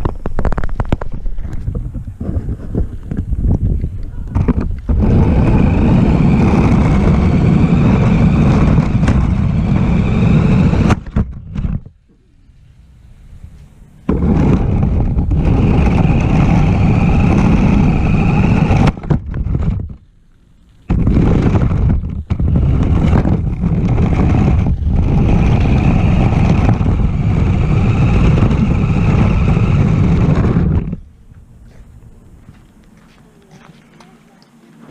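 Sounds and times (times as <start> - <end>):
radio-controlled car motor running: 2.4 - 11.8, 13.8 - 20.0, 20.8 - 31.1.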